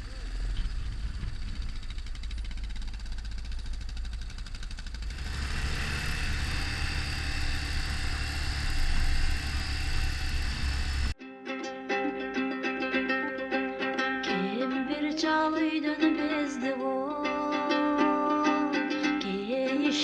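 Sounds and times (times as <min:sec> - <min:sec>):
motorcycle engine running: 0:00.0 - 0:11.2
plucked string music: 0:10.5 - 0:20.0.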